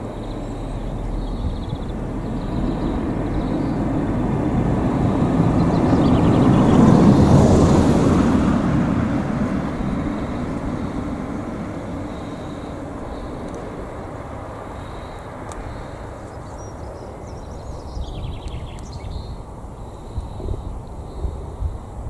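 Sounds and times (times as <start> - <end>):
bird chirping: 0.0 - 7.9, 14.6 - 21.9
distant traffic rumble: 0.0 - 22.0
wind gusts on microphone: 0.0 - 22.0.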